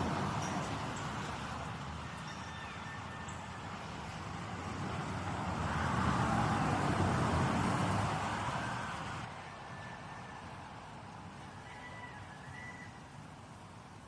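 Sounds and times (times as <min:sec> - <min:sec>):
car passing on road: 0:03.8 - 0:09.3.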